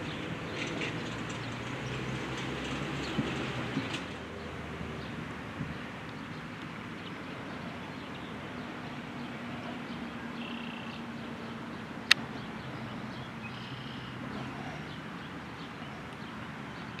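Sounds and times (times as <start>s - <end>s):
bird chirps: 9.6s - 11.1s, 12.8s - 15.0s.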